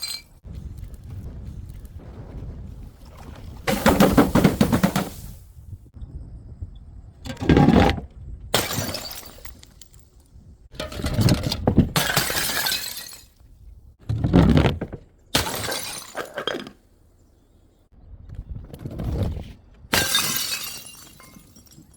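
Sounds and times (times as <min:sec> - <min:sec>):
glass bottles smashing: 0:00.0 - 0:00.4, 0:08.6 - 0:09.9, 0:12.0 - 0:13.4, 0:15.4 - 0:16.8, 0:20.0 - 0:21.9.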